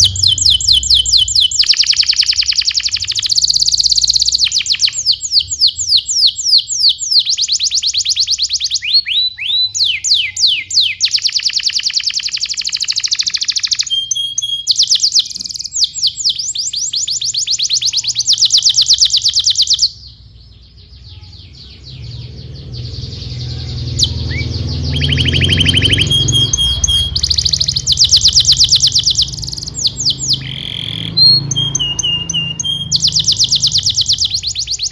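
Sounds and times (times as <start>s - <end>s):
canary singing trills: 0.0s - 34.9s.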